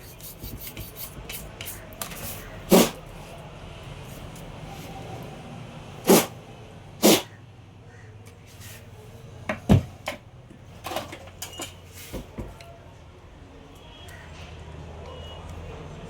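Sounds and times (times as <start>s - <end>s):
hard objects knocking on workbench: 9.5s - 10.2s.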